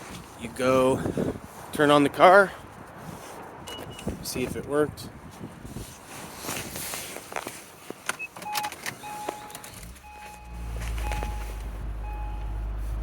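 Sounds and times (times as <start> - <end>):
car warning chime beeping: 3.6 - 4.1, 8.2 - 12.8
car engine starting and idling: 8.1 - 13.0.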